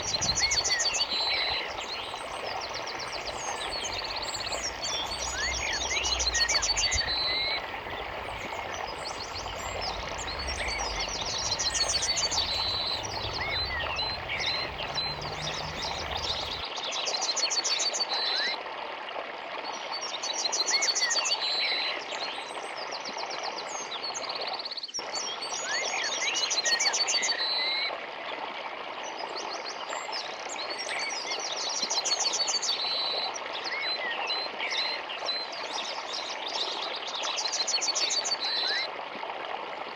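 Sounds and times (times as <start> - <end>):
birds chirping and singing: 0.0 - 16.6
forest stream rushing: 0.0 - 16.6.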